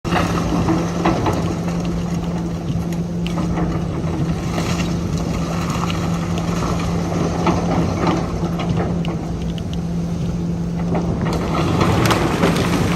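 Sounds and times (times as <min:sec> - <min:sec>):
demolition machine engine humming: 0:00.0 - 0:12.9
building material cracking: 0:11.3 - 0:12.9.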